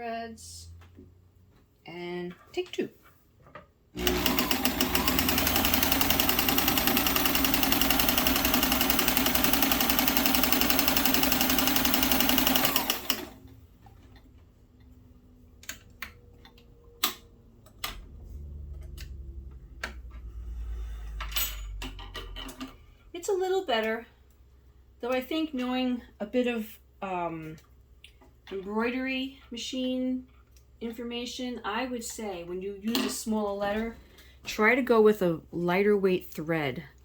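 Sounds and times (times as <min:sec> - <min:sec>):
sewing machine running: 0:04.0 - 0:13.4.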